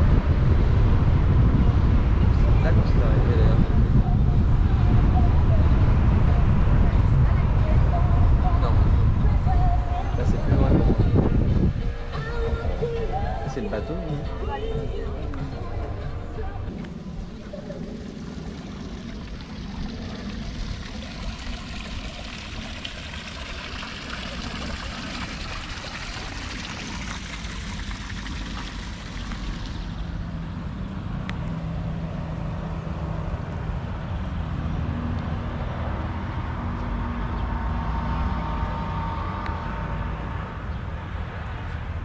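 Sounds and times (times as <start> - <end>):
rushing wind or water: 0.0 - 13.5, 16.7 - 42.0
vehicle engine running: 14.2 - 42.0.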